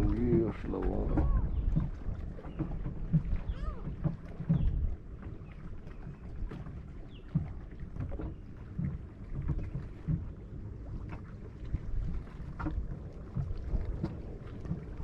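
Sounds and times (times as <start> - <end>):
wind noise on microphone: 0.0 - 5.0
water noise: 0.0 - 15.0.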